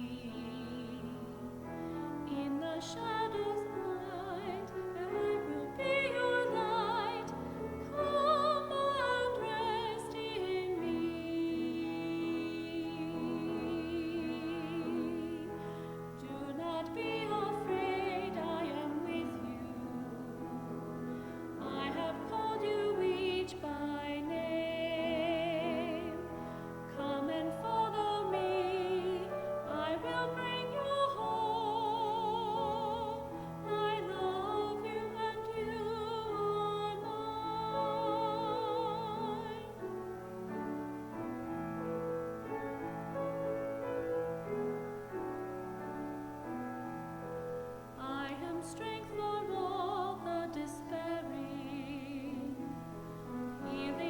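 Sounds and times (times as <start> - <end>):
classical solo singing: 0.0 - 43.0, 47.7 - 54.0
keyboard accompaniment: 0.0 - 54.0.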